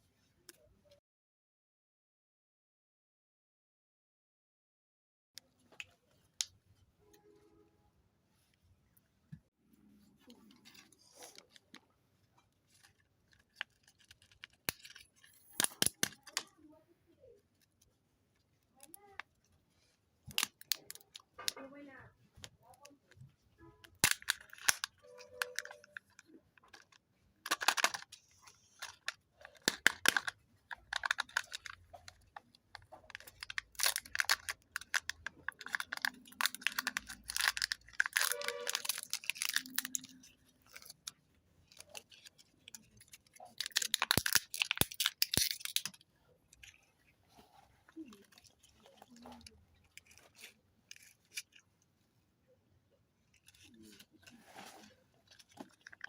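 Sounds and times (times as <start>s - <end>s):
plastic wrappers crinkling and tearing: 19.8s - 21.7s, 23.8s - 51.6s, 53.3s - 56.0s.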